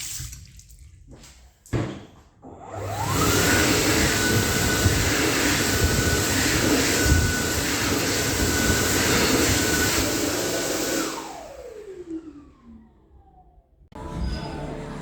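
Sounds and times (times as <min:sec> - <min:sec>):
electric hand dryer blowing: 0:02.6 - 0:12.8.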